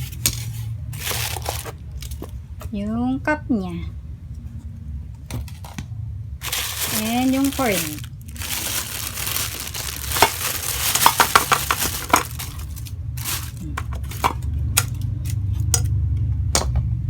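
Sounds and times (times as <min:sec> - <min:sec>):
plastic packaging crinkling: 0:01.0 - 0:02.3, 0:06.4 - 0:15.6.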